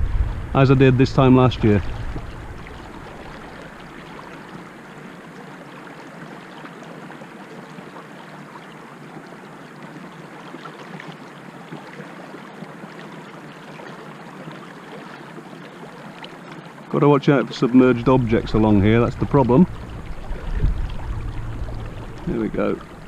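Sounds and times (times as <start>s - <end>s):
faint steady hum: 0.0s - 10.4s, 15.5s - 23.0s
river water washing along boat: 0.0s - 23.0s.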